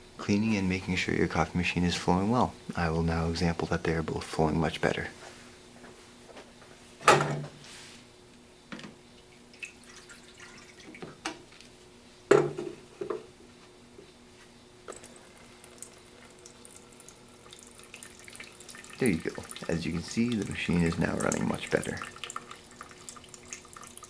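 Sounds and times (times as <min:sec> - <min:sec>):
faint steady hum: 0:00.0 - 0:24.0
water running and dripping: 0:09.5 - 0:11.7, 0:14.9 - 0:24.0.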